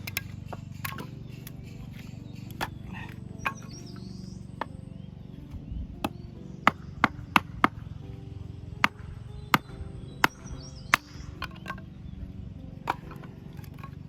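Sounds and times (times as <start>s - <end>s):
axe chopping wood: 0.0s - 4.8s, 6.0s - 8.0s, 8.8s - 11.9s, 12.8s - 14.0s
background music: 0.0s - 14.0s.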